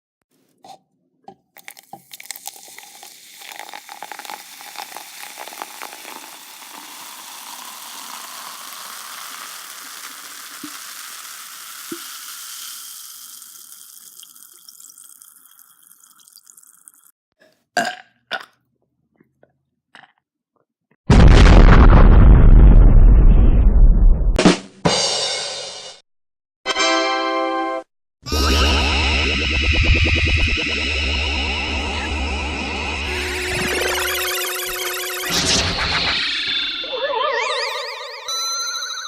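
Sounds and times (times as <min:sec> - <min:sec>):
liquid pouring into container: 0:01.6 - 0:17.1.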